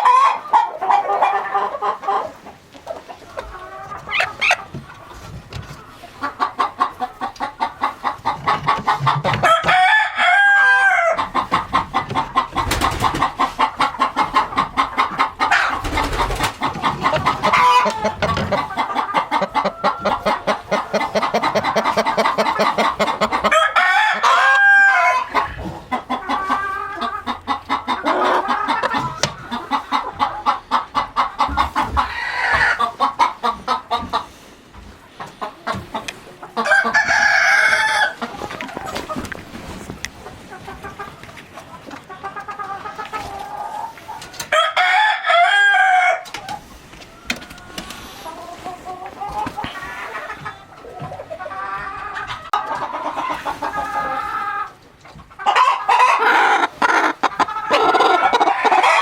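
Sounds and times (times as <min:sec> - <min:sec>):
chickens clucking: 0:00.0 - 0:59.0
rooster crowing: 0:09.4 - 0:11.2, 0:23.5 - 0:25.4, 0:36.6 - 0:38.2, 0:44.5 - 0:46.3.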